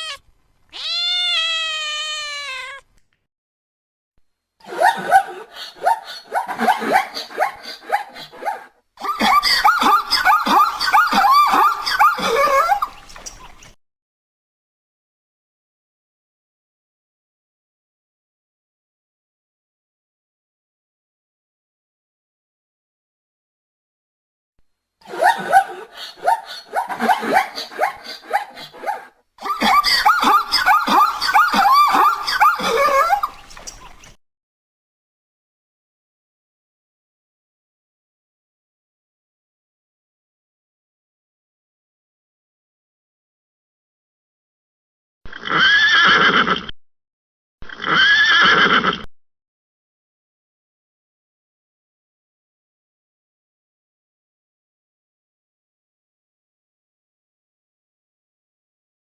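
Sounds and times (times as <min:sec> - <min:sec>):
animal yelping: 0:00.0 - 0:02.8, 0:26.1 - 0:34.1.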